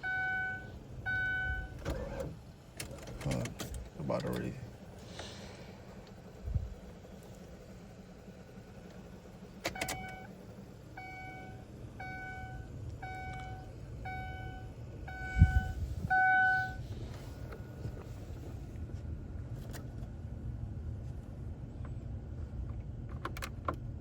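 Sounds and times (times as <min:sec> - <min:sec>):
car warning chime: 0:00.0 - 0:01.8, 0:09.7 - 0:10.4, 0:11.0 - 0:16.8
steady low hum: 0:00.0 - 0:23.1.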